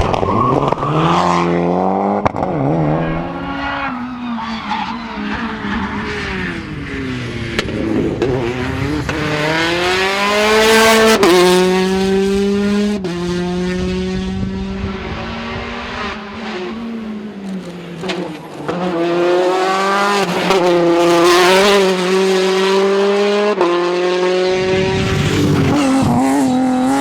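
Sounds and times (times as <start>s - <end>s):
rally car engine revving: 0.0s - 27.0s
tyre squeal: 3.0s - 6.3s.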